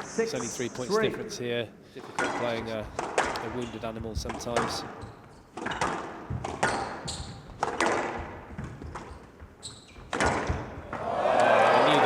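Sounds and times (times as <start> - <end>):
squash ball knocking: 2.2 - 11.0
shoes squeaking on floor: 3.6 - 10.9.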